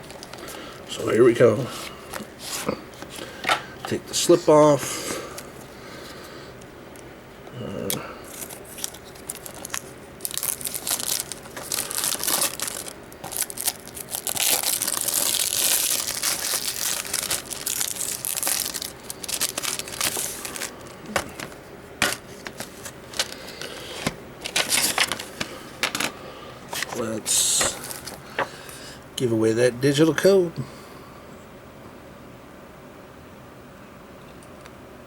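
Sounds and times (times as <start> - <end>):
wrapping crinkling and tearing: 8.3 - 26.1, 26.7 - 28.5.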